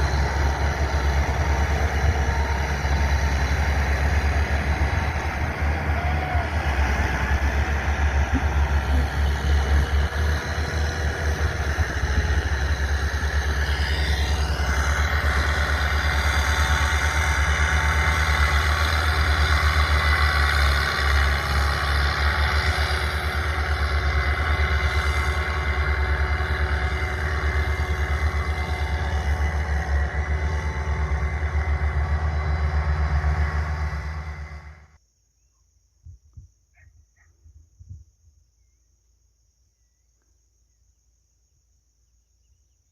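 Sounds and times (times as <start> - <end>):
heavy vehicle engine rumbling: 0.0 - 35.0
rising whine: 0.0 - 35.0.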